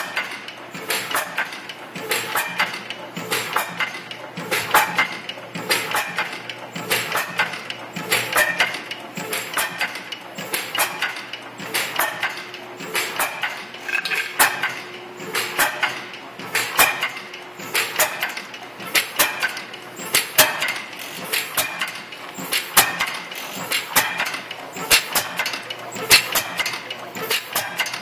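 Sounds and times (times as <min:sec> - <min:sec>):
metal parts clanking: 0:13.8 - 0:14.8.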